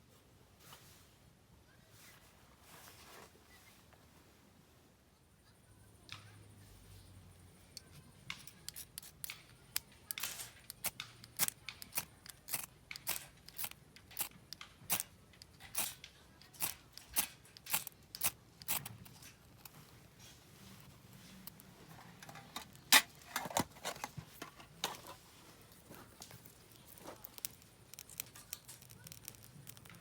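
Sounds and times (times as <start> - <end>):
sharp clicks or snips: 7.8 - 19.7.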